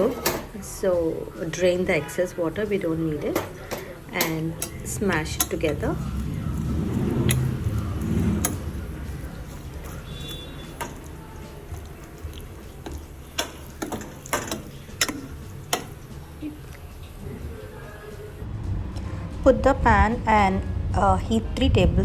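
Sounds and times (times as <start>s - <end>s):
soft squishing of mashing: 3.5s - 18.3s
utensil knocking against metal pot: 13.3s - 16.0s.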